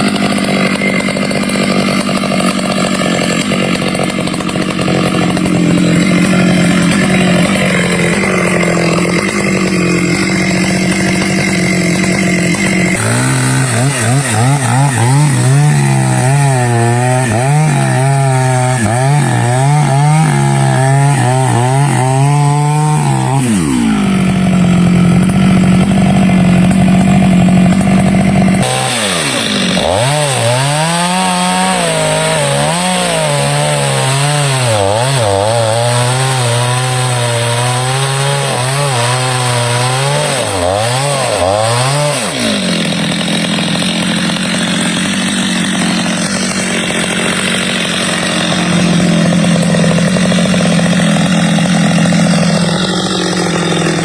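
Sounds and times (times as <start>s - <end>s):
chainsaw cutting wood: 0.0s - 54.0s.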